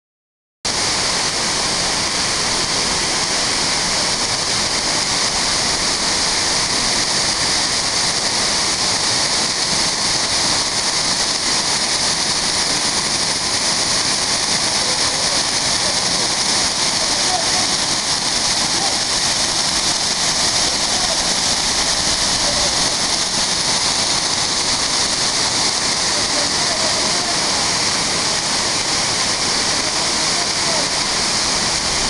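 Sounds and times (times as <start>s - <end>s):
waterfall rushing: 0.7s - 32.0s.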